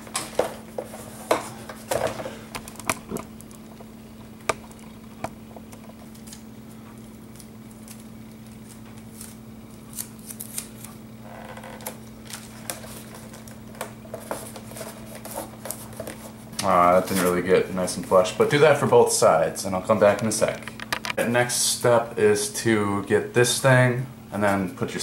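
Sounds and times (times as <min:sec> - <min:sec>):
steady low hum: 0:00.0 - 0:25.0
tape crinkling: 0:02.6 - 0:17.5.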